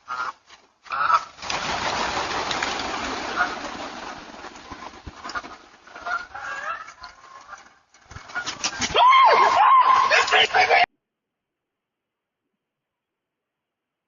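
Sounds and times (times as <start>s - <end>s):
geese honking: 0.0s - 1.3s, 3.3s - 3.9s, 4.6s - 8.8s.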